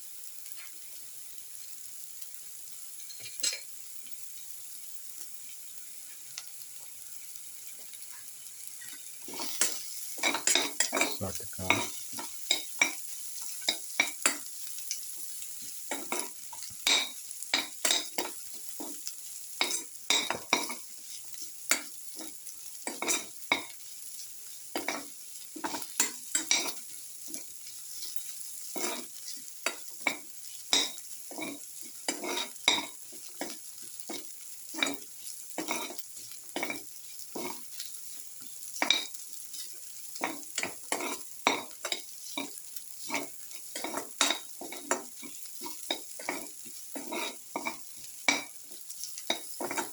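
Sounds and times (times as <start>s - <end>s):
garlic sizzling in hot oil: 0.0s - 49.9s
utensil scraping pan: 28.0s - 29.4s, 30.7s - 36.0s, 37.4s - 37.8s, 40.2s - 48.5s.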